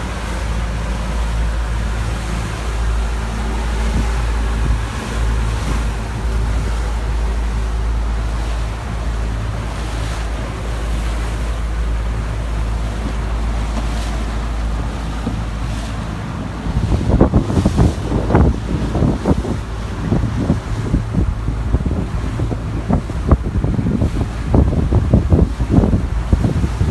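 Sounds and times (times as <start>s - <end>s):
boat engine hum: 0.0s - 26.9s
rushing water: 0.0s - 26.9s
wind buffeting microphone: 0.0s - 26.9s.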